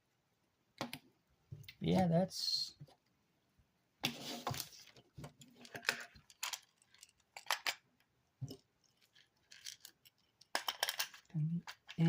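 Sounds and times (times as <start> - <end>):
plastic parts clicking and knocking: 5.0 - 12.0.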